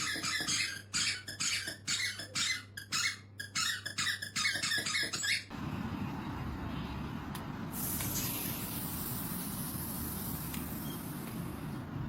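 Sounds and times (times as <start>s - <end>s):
short high squeaks: 0.0s - 5.5s.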